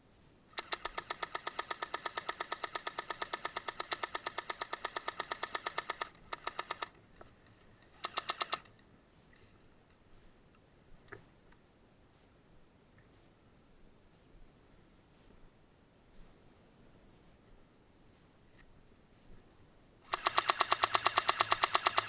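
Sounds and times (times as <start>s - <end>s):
airsoft gun firing bursts: 0.6s - 7.0s, 7.9s - 8.7s, 20.1s - 22.0s.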